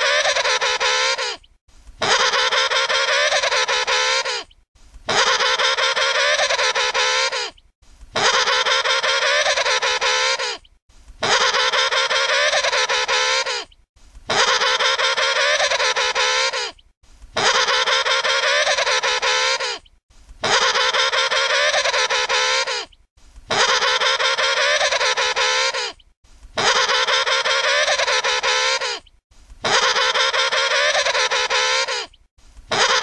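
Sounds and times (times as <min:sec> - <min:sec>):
penguin trumpeting call: 0:00.0 - 0:01.4, 0:02.0 - 0:04.5, 0:05.1 - 0:07.5, 0:08.2 - 0:10.6, 0:11.2 - 0:13.7, 0:14.3 - 0:16.8, 0:17.4 - 0:19.8, 0:20.4 - 0:22.9, 0:23.5 - 0:26.0, 0:26.6 - 0:29.0, 0:29.6 - 0:32.1, 0:32.7 - 0:33.0.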